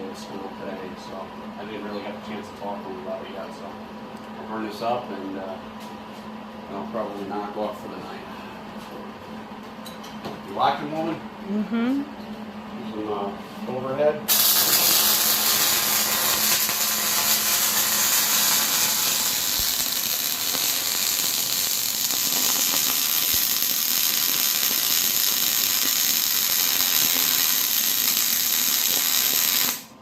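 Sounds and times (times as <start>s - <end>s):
arc welding crackle and hiss: 14.3s - 30.0s.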